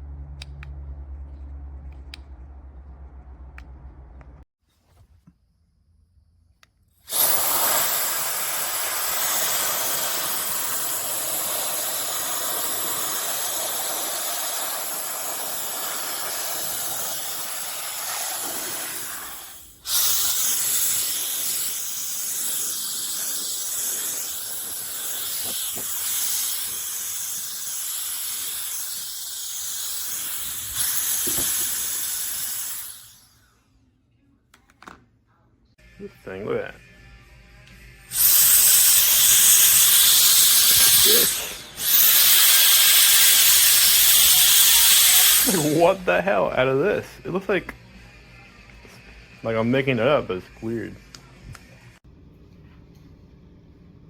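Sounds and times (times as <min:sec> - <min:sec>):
air duster fan blowing: 0:07.1 - 0:33.5, 0:38.1 - 0:47.6.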